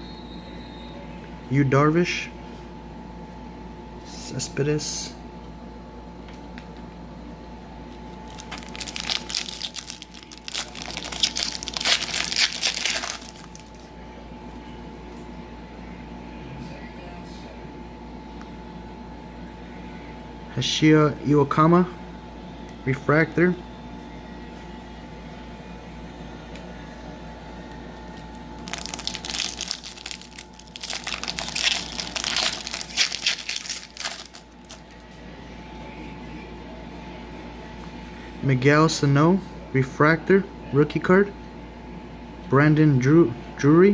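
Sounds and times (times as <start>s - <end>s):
foil wrapper crinkling: 7.9s - 13.9s, 27.6s - 35.2s.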